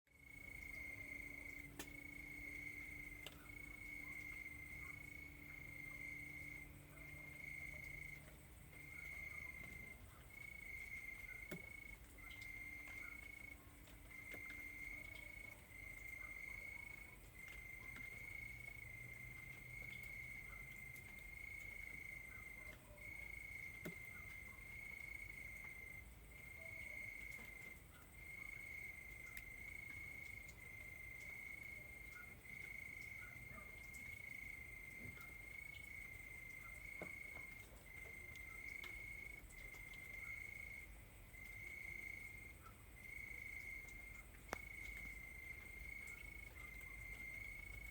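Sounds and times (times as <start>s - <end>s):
crickets chirping: 0.2s - 47.9s.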